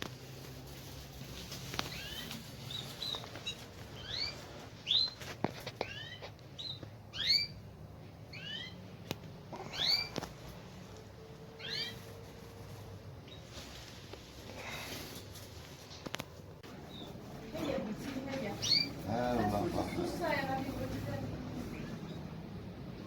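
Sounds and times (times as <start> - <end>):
canaries calling: 1.3 - 13.6, 16.7 - 22.4.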